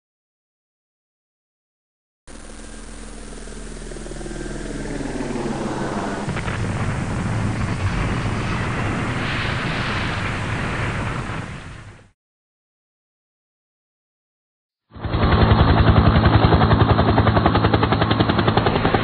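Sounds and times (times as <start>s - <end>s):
rushing rumbling noise: 2.3s - 12.1s.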